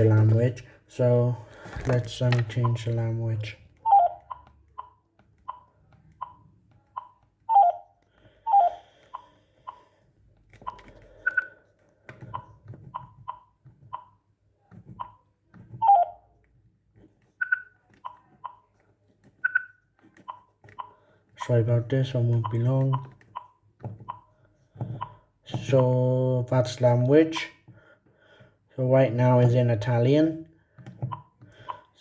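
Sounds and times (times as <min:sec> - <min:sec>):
phone key beeps: 0:03.8 - 0:07.9, 0:10.7 - 0:11.6, 0:15.8 - 0:16.2, 0:17.4 - 0:18.6, 0:19.4 - 0:20.9.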